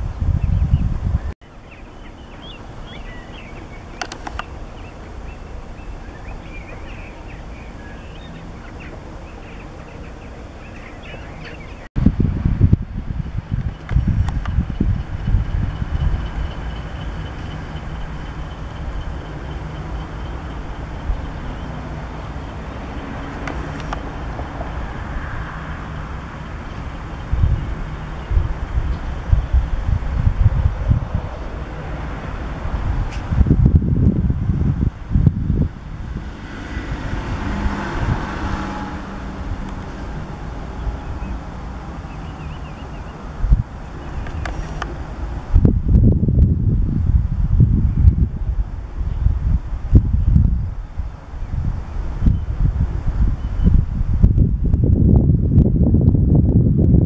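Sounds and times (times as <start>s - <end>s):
steady low rumble: 0.0s - 57.0s
wind on microphone: 0.0s - 57.0s
small birds chirping: 0.1s - 11.9s, 40.8s - 44.9s
diesel locomotive engine running: 1.1s - 56.5s.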